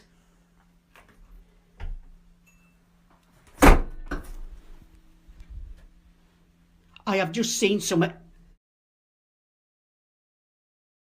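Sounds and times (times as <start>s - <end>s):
door banging: 3.6s - 4.5s.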